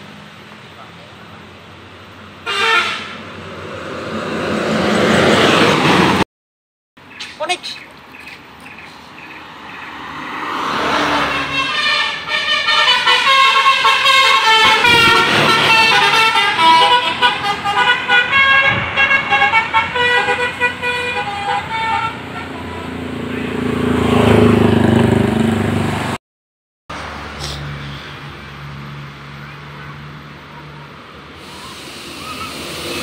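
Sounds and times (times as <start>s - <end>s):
low rumble of bus passing: 0.0s - 6.2s, 7.0s - 26.2s, 26.9s - 33.0s
musical bus horn melody: 2.4s - 3.2s, 11.1s - 22.9s.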